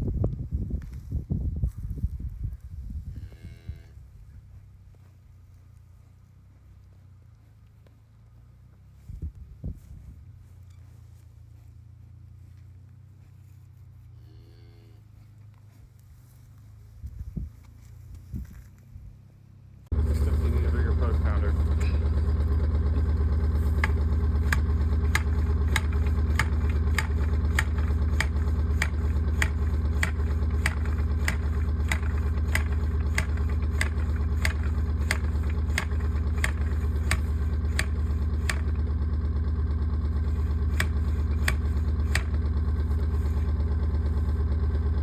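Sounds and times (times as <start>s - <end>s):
engine idling: 4.1s - 14.0s, 19.3s - 45.0s
sharp regular clicks: 19.9s - 39.1s, 40.1s - 44.9s.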